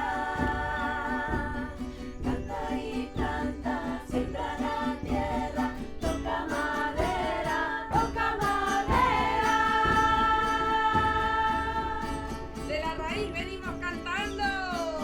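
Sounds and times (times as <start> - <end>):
person singing a song: 0.0 - 12.6.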